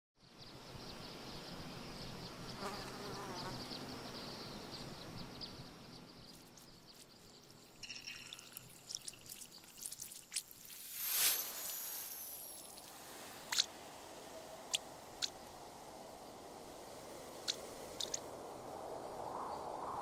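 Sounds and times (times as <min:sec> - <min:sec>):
insects buzzing: 0:01.9 - 0:19.7.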